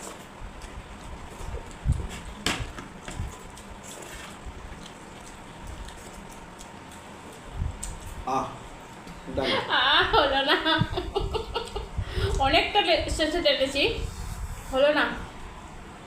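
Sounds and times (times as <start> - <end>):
chewing and mouth noises: 0.0 - 8.2.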